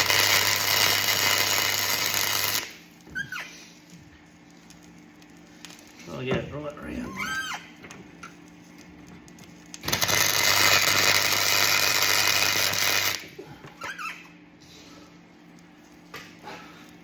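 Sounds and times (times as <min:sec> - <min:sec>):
welding arc crackling hiss: 0:00.0 - 0:03.0, 0:09.7 - 0:13.4.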